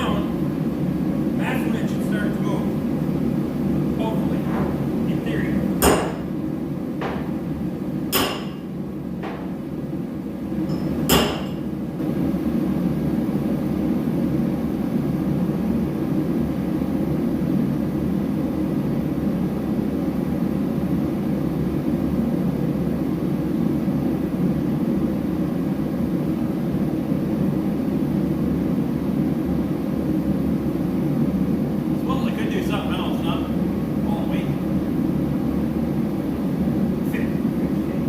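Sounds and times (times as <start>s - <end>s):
heater roaring: 0.0s - 38.0s
sharp metallic knock: 5.8s - 6.2s, 8.1s - 9.4s, 10.7s - 11.6s.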